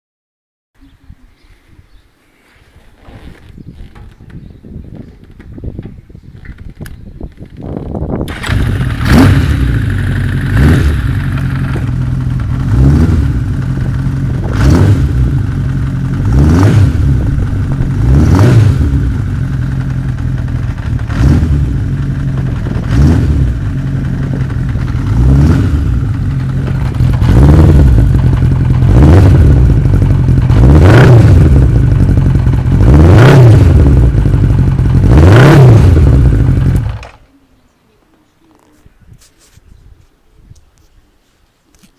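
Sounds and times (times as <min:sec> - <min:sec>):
motorcycle engine revving: 0:07.3 - 0:37.2.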